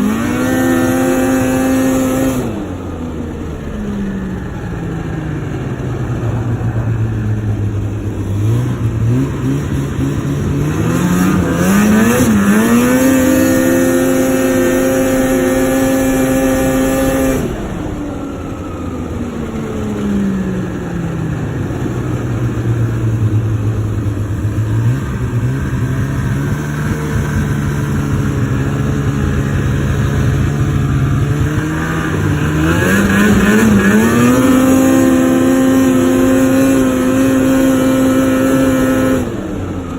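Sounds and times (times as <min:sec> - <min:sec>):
snowmobile engine revving: 0:00.0 - 0:39.9.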